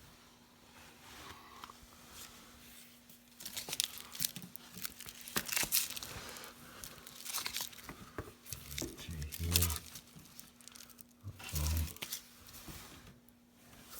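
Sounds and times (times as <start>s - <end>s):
faint steady hum: 0.0s - 13.9s
rustling and crinkling handling: 0.5s - 13.9s.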